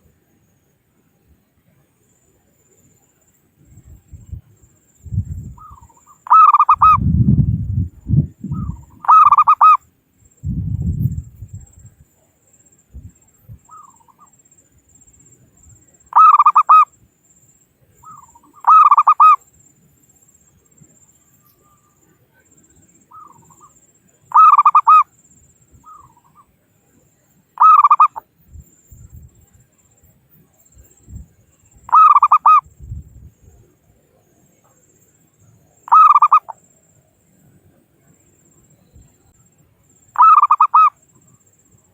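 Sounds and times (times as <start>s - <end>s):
dove cooing: 5.6s - 7.5s, 8.4s - 9.8s, 16.2s - 16.8s, 18.0s - 19.4s, 24.3s - 25.0s, 27.6s - 28.2s, 31.9s - 32.6s, 35.9s - 36.6s, 40.2s - 40.9s.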